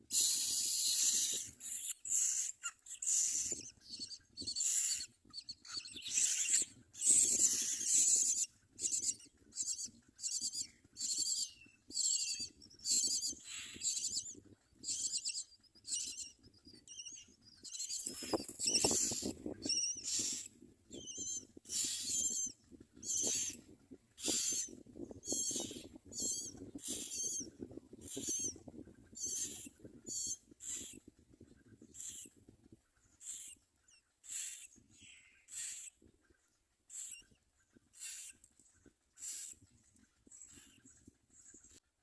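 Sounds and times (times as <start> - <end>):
nestlings calling shrilly: 0.1 - 14.3, 16.9 - 23.6, 24.2 - 28.6, 29.2 - 31.0, 33.2 - 33.6, 34.2 - 34.7, 35.5 - 35.9, 36.9 - 37.2, 38.0 - 38.4, 39.2 - 39.6.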